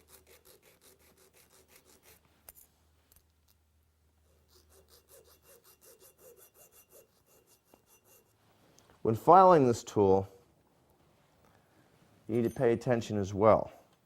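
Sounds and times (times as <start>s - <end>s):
file rasping on steel teeth: 0.0s - 2.2s, 4.3s - 8.4s.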